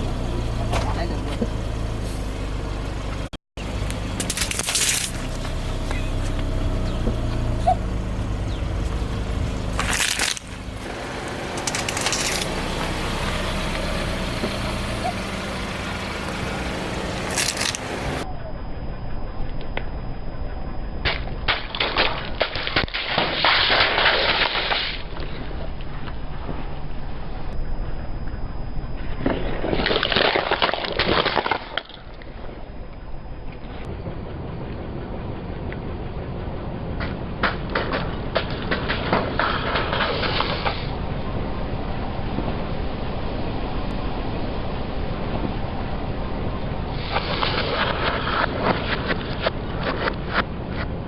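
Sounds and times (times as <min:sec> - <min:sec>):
crunching under tyre: 0:00.0 - 0:18.2, 0:29.0 - 0:32.5
car engine running: 0:00.0 - 0:22.4
low steady rumble: 0:00.0 - 0:51.0
tyre crushing crunchy objects: 0:08.0 - 0:13.5.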